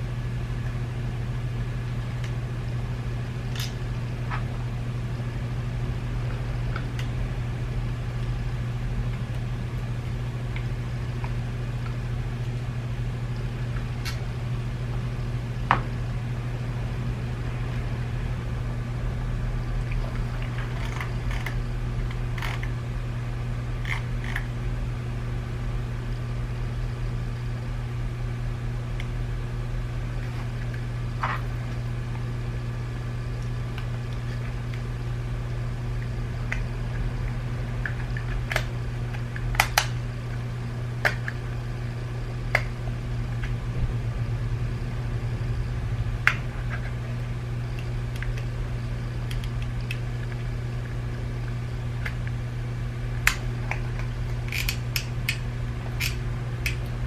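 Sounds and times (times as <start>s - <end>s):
low electrical hum: 0.0s - 57.0s
plastic parts clicking: 49.3s - 50.0s, 53.2s - 56.9s.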